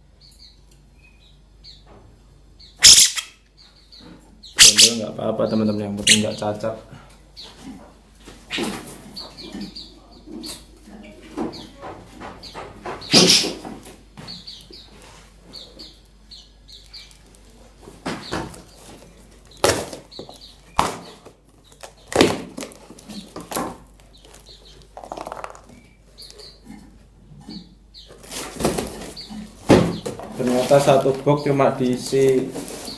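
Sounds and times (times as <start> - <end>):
short bird chirps: 2.8 - 3.4, 4.5 - 5.0
birds fluttering in a box: 7.4 - 26.6, 27.4 - 32.9
knocks and bumps: 11.3 - 14.4.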